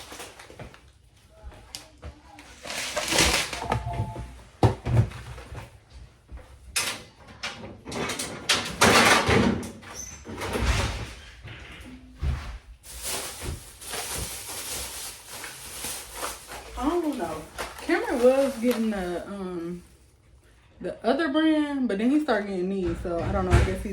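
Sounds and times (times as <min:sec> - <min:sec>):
groceries knocking and thudding: 0:02.0 - 0:06.4, 0:07.6 - 0:20.1
bags rustling: 0:02.5 - 0:04.5, 0:12.3 - 0:20.4.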